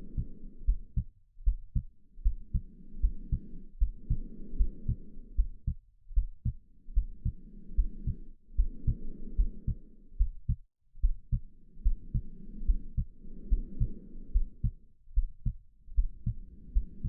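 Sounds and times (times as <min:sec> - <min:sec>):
heartbeat: 0:00.0 - 0:17.0
slow muffled breathing: 0:00.0 - 0:17.0.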